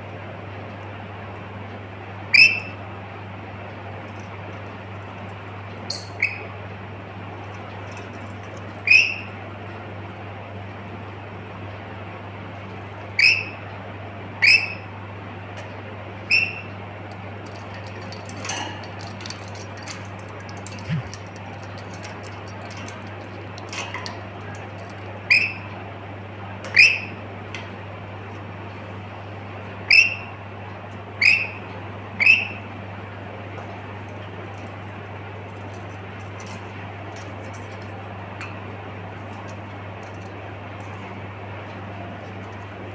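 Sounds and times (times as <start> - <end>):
steady low hum: 16.0 - 25.3
soft clicks and rustles: 17.1 - 25.1.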